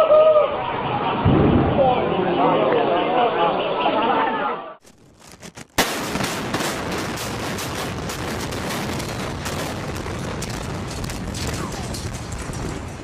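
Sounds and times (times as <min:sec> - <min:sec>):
sharp explosive bang: 0:01.2 - 0:01.9, 0:05.8 - 0:13.0
crackle of rapid blasts: 0:04.8 - 0:13.0.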